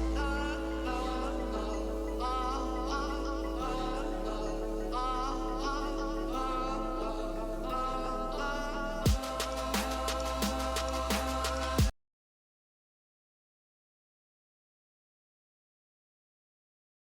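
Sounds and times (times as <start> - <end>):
person singing with vibrato: 0.0 - 11.9
sharp hit and beat: 9.1 - 11.9.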